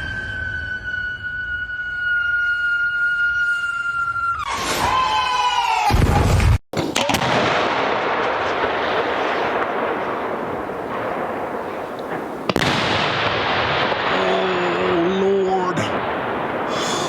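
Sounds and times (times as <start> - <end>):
firework whistle: 0.0 - 6.5, 16.6 - 17.0
firework boom: 4.2 - 17.0
firework hiss and crackle: 8.3 - 17.0.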